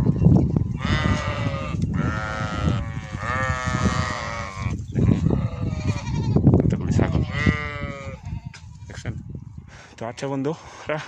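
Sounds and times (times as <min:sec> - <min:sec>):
goats bleating: 0:00.8 - 0:09.0.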